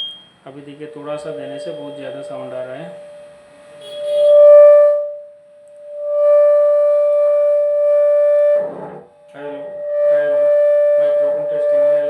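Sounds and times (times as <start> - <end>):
steady tone through speaker: 0.0 - 12.0.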